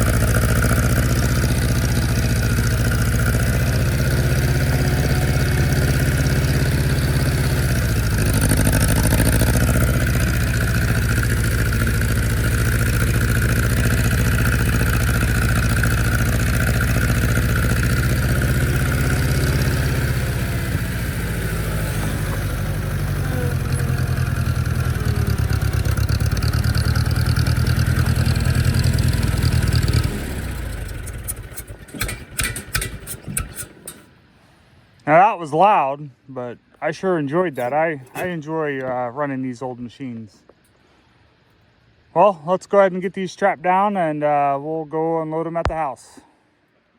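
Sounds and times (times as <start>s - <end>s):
farm machine engine running: 0.0s - 34.1s.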